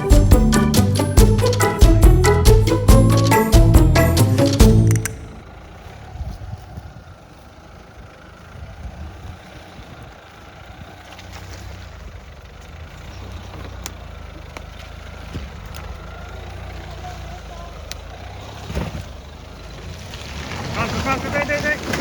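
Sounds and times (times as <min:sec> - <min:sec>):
diesel engine at low revs: 0:00.0 - 0:20.6
sharp clicks and knocks: 0:04.6 - 0:05.3.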